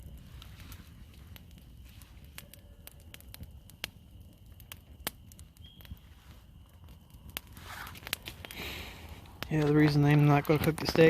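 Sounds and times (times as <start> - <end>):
campfire crackling and popping: 0.0 - 11.0.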